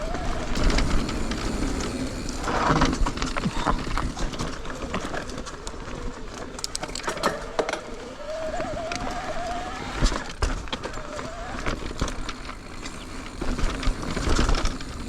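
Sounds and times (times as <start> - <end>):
wavering rising whine: 0.0 - 3.3, 4.2 - 12.1
bike rattling over rocks: 0.0 - 15.0
bike tyres rolling on rocks: 0.0 - 15.0.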